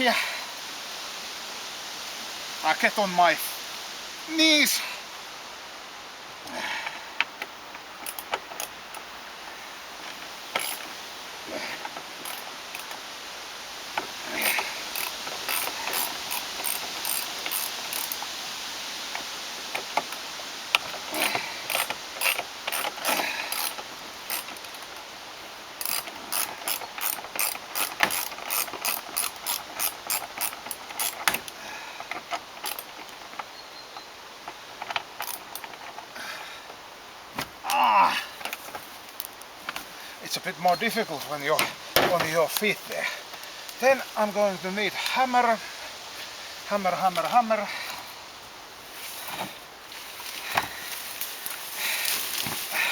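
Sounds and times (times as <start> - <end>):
ratchet wrench clicking: 10.6 - 10.9, 14.4 - 18.3, 21.2 - 24.9, 25.8 - 31.4, 32.6 - 33.0, 35.2 - 35.7.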